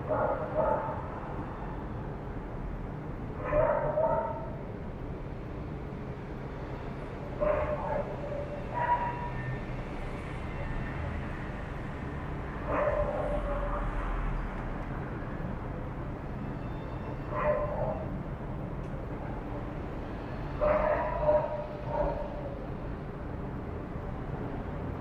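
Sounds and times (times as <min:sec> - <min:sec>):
dog barking: 0:00.0 - 0:01.1, 0:03.4 - 0:04.6, 0:07.4 - 0:09.5, 0:12.6 - 0:14.1, 0:17.3 - 0:18.1, 0:20.6 - 0:22.6.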